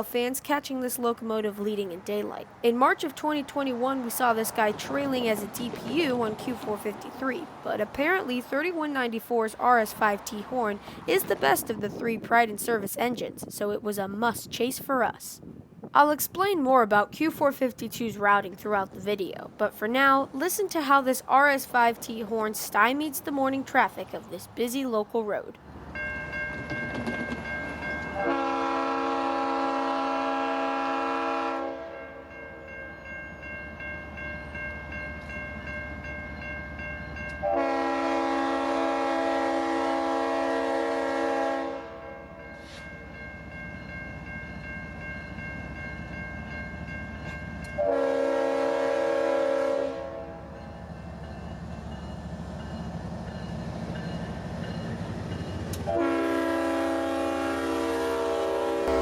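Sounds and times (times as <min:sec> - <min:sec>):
steady ringing bell: 0:26.0 - 0:28.2, 0:32.0 - 0:37.4, 0:42.4 - 0:47.8
locomotive air horn blasts: 0:28.2 - 0:32.1, 0:37.4 - 0:42.2, 0:47.8 - 0:50.6, 0:55.9 - 0:59.0
low locomotive rumble: 0:43.4 - 0:59.0.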